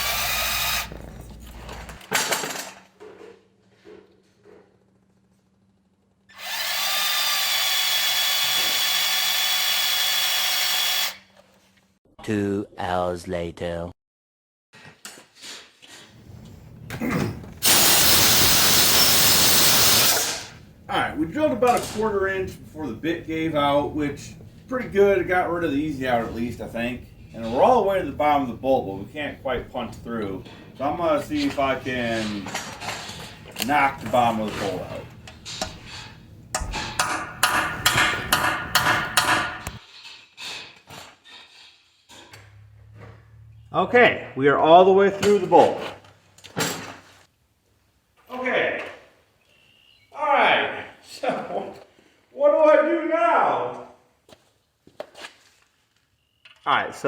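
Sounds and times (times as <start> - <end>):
hammer striking metal: 36.6 - 39.8.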